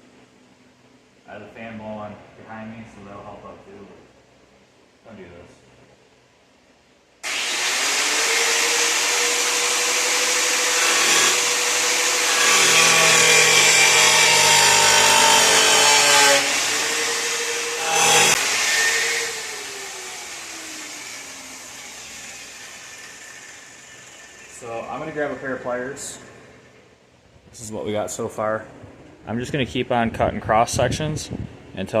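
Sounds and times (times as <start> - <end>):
angle grinder cutting metal: 7.2 - 25.3.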